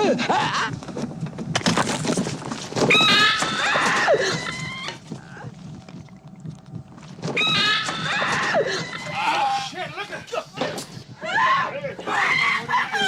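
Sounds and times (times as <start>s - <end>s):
clattering commotion: 0.7s - 9.3s.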